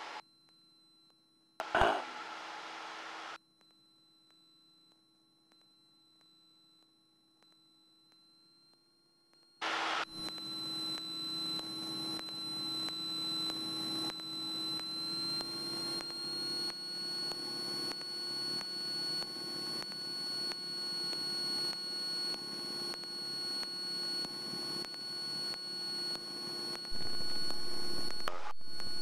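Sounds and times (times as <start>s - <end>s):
steady high whine: 0.0s - 0.2s, 1.6s - 3.4s, 9.6s - 29.0s.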